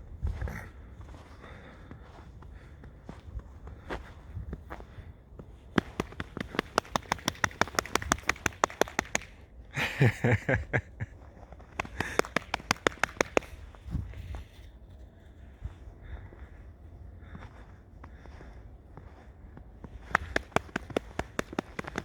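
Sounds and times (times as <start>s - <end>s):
fox making sharp clicks: 5.8s - 9.4s, 11.7s - 13.7s, 20.0s - 22.0s.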